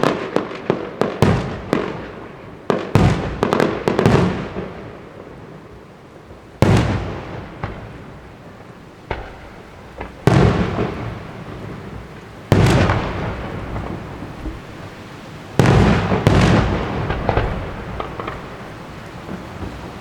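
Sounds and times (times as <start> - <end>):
fireworks bangs echoing: 0.0 - 20.0
small firework pops: 6.6 - 7.9, 9.0 - 11.1, 15.6 - 20.0.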